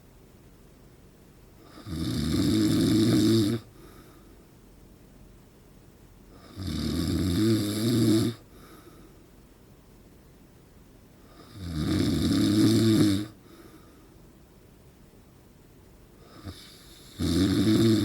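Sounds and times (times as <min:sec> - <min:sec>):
quiet breathing: 0:01.5 - 0:02.1, 0:02.8 - 0:04.8, 0:06.2 - 0:06.7, 0:07.9 - 0:09.6, 0:11.2 - 0:11.8, 0:12.8 - 0:14.6, 0:16.1 - 0:18.0
man snoring loudly: 0:01.7 - 0:03.7, 0:06.5 - 0:08.4, 0:11.5 - 0:13.4, 0:16.4 - 0:18.0.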